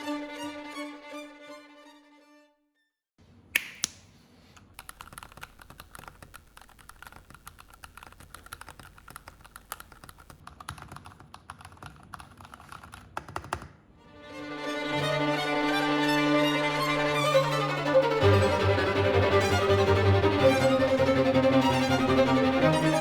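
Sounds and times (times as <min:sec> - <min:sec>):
mechanical keyboard typing: 0:04.6 - 0:13.8.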